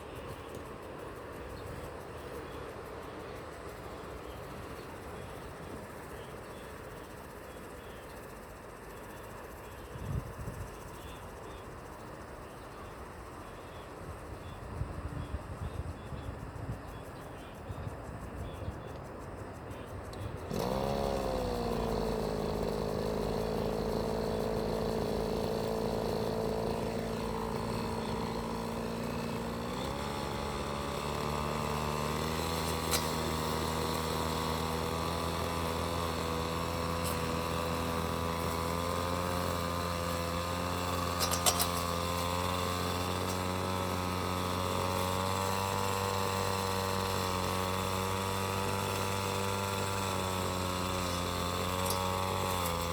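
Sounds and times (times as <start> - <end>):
vehicle engine running: 17.6 - 52.9.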